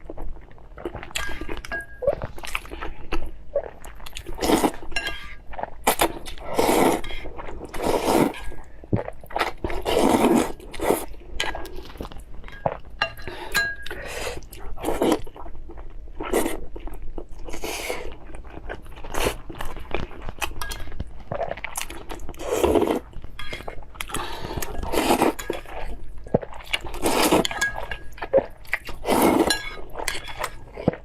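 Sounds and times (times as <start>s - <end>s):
chewing and crunching: 0.0s - 31.0s
utensils clinking on dishes: 29.4s - 30.5s.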